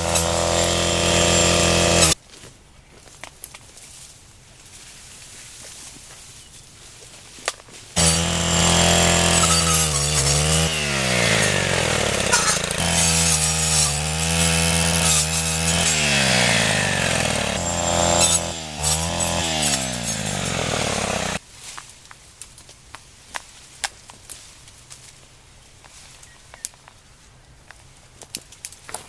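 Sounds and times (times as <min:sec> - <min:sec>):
brush cutter engine revving: 0:00.0 - 0:02.2, 0:08.0 - 0:21.4.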